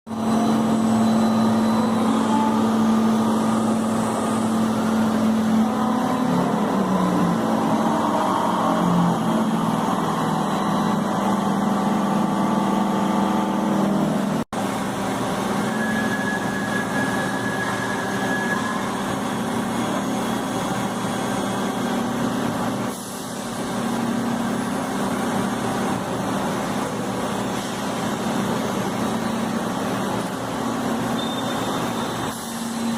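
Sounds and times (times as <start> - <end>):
floor scrubber motor whine: 0.1 - 22.6.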